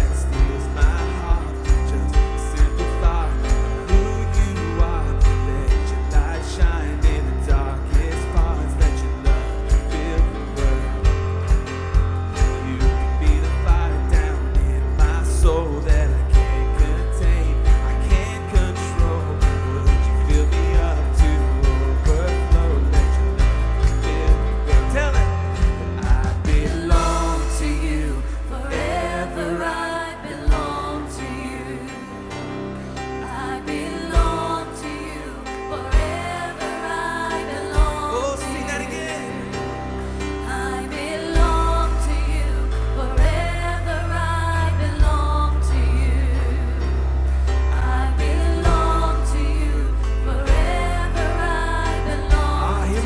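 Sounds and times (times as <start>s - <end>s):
drum hits: 0.0s - 27.9s, 35.9s - 37.0s, 37.7s - 38.2s, 48.3s - 49.2s, 50.5s - 53.0s
live band playing: 0.0s - 28.2s
deep bass notes: 0.0s - 53.0s
person singing: 0.0s - 53.0s.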